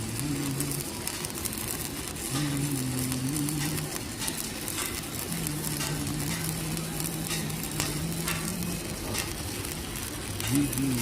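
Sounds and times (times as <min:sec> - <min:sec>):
welding arc crackling: 0:00.0 - 0:11.0.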